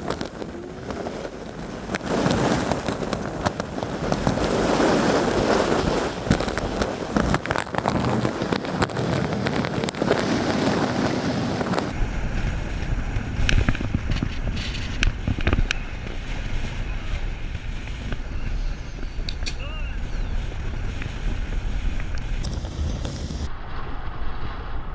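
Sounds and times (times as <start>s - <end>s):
vehicle noise: 0.0s - 24.8s
rumbling noise: 0.0s - 24.9s
wind on microphone: 0.0s - 24.9s
scattered clicks: 22.0s - 23.5s.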